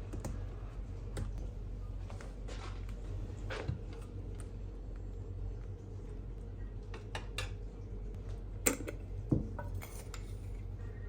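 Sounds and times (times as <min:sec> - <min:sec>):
steady low hum: 0:00.0 - 0:11.0
dishes and cutlery clinking: 0:08.7 - 0:10.6.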